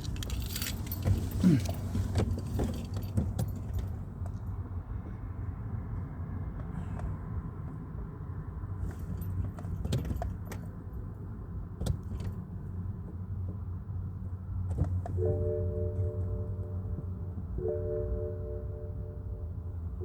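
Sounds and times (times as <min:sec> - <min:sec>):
light clicks and rattles: 0:00.0 - 0:04.6
car engine humming: 0:00.0 - 0:20.0.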